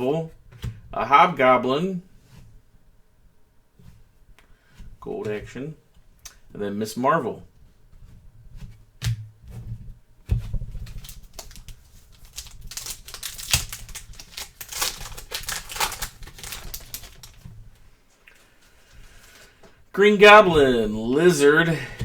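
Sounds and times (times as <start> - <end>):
wrapper crinkling: 10.5 - 17.8
cards clicking and tapping: 10.7 - 17.4.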